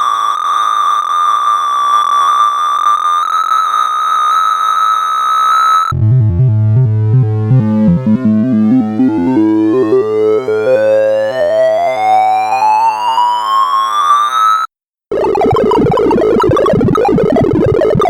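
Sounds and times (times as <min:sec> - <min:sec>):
held high synthesized tone: 0:15.1 - 0:18.0
short tones climbing in pitch: 0:15.1 - 0:18.0.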